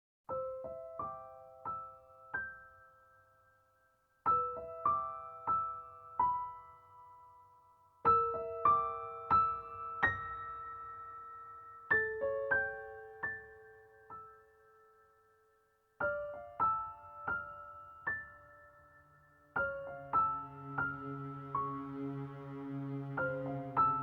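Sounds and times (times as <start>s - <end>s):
piano music: 4.2s - 15.2s, 16.0s - 24.0s.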